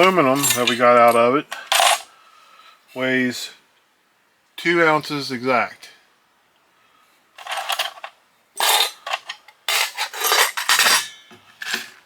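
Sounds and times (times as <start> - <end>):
metal parts clinking: 0.0 - 2.1, 7.4 - 12.0.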